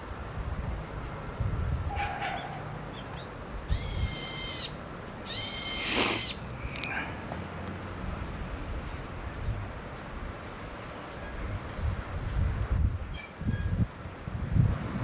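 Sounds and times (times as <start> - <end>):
faint short bird calls: 3.7 - 6.4
bird long drawn-out calls: 3.7 - 6.5.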